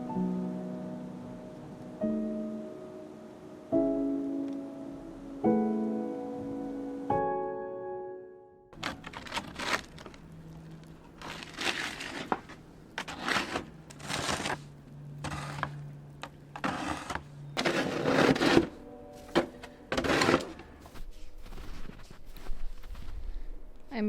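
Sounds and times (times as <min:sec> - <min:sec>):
snow crunching and swishing: 0:11.1 - 0:15.7, 0:16.6 - 0:23.6.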